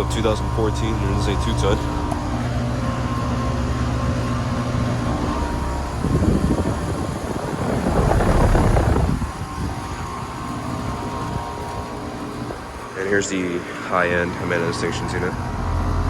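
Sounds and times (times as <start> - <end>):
air conditioner unit humming: 0.0 - 16.0
loud rushing noise: 5.4 - 10.3.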